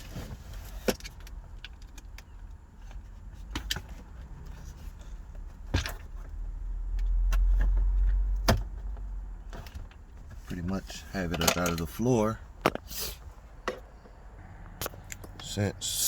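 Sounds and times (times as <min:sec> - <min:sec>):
metal and plastic parts clicking: 0:11.3 - 0:12.0.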